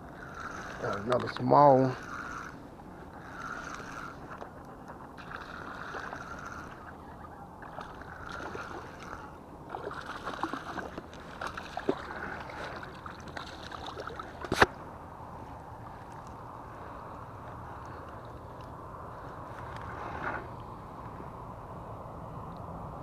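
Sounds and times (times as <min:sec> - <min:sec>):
fishing reel winding: 0:00.2 - 0:02.6, 0:03.2 - 0:04.3, 0:05.2 - 0:06.8
fish splashing in water: 0:07.6 - 0:14.7.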